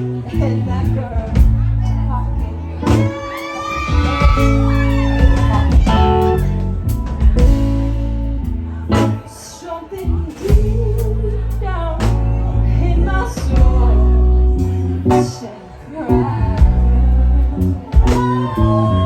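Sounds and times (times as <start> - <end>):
live band playing soul-blues ballad: 0.0 - 19.0
person singing: 2.5 - 6.8, 8.9 - 19.0
drum hits: 4.2 - 8.0.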